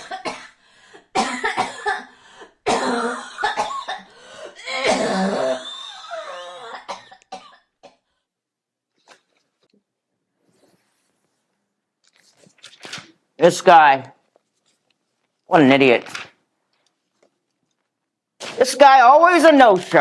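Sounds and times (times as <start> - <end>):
person coughing: 0.0 - 8.0.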